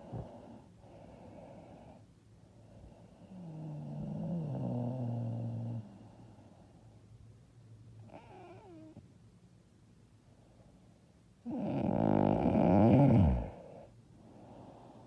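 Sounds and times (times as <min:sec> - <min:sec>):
woman snoring: 0:03.2 - 0:06.0, 0:08.1 - 0:09.0, 0:11.4 - 0:13.9.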